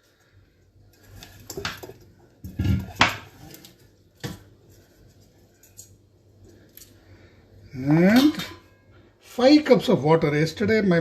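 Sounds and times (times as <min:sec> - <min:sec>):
metal pots and utensils clinking: 0:08.0 - 0:08.9.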